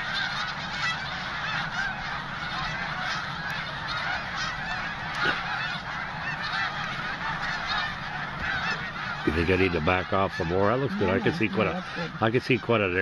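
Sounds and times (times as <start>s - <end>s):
flock of geese honking: 0.0s - 13.0s.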